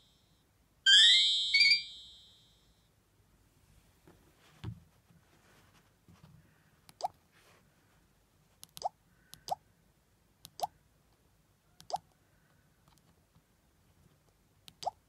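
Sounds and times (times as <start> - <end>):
phone ringtone blips: 0.9 - 2.5.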